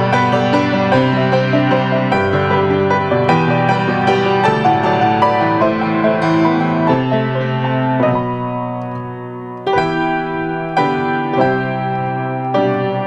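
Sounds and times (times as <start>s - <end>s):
slow piano piece: 0.0s - 13.0s.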